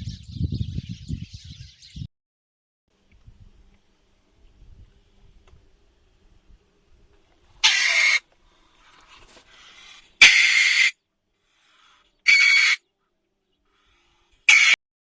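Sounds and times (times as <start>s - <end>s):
animal harsh calls: 7.6s - 8.2s, 9.6s - 11.0s, 11.8s - 12.8s, 14.4s - 14.8s.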